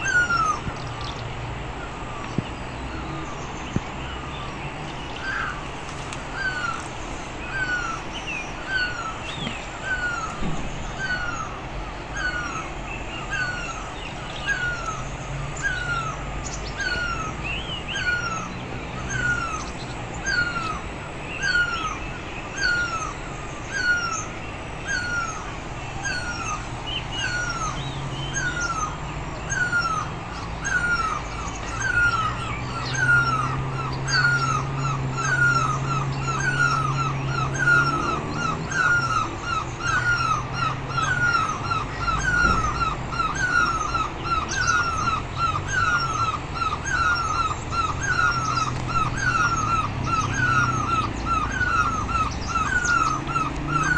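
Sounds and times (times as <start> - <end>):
higher bird calls: 0.0 - 53.9
bird repeating hooked call: 23.8 - 53.9.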